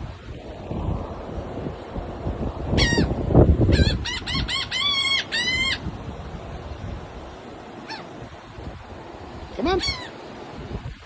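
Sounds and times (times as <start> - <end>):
wind buffeting microphone: 0.0 - 11.0
gulls calling: 3.8 - 9.0, 9.6 - 10.2.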